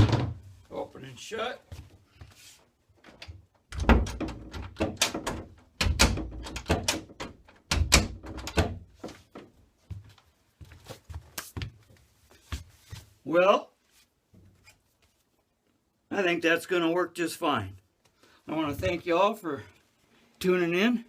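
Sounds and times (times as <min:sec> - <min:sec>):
door thudding shut: 0:00.0 - 0:00.4, 0:03.7 - 0:08.8
hinge rattling clicks: 0:03.2 - 0:08.7.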